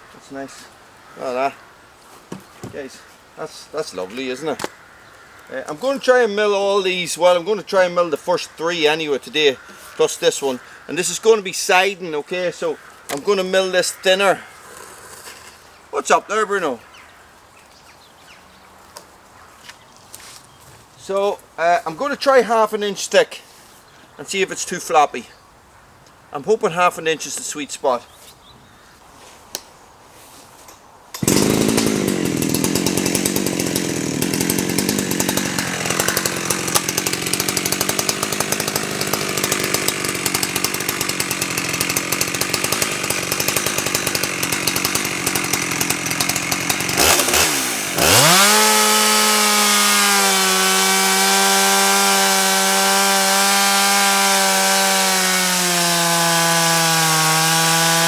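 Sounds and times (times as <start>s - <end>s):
chainsaw cutting log: 31.2s - 58.0s.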